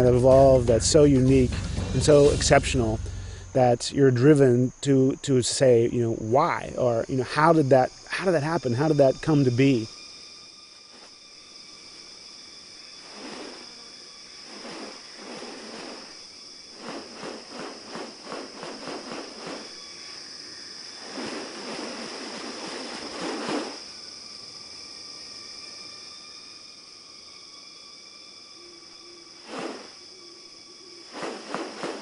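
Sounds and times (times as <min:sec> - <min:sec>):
insects droning high-pitched: 0:00.0 - 0:32.0
rapid rattling pulses: 0:14.4 - 0:19.8.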